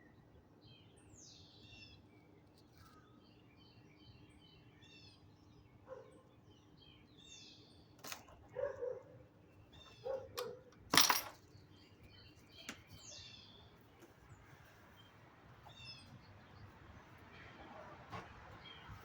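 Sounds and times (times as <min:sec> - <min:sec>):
birds chirping: 0:00.0 - 0:10.7, 0:11.3 - 0:19.0
dog barking: 0:05.9 - 0:06.3, 0:08.5 - 0:09.2, 0:10.0 - 0:10.7.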